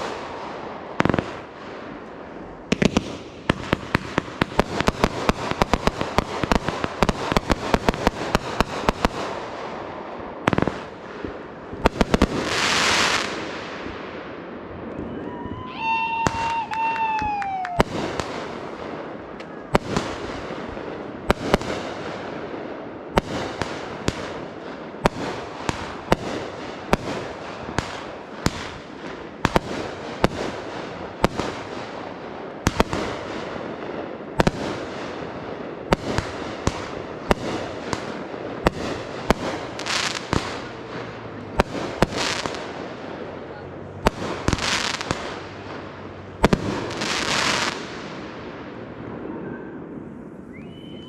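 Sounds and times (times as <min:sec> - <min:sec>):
fireworks bangs: 0:00.0 - 0:51.0
fireworks crackling: 0:00.0 - 0:51.0
falling whistling tone: 0:50.4 - 0:51.0.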